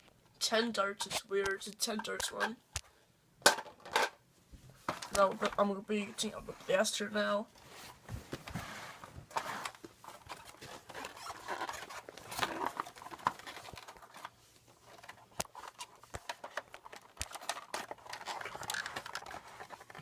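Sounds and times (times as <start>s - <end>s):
packaging rustling and scraping: 7.6s - 20.0s.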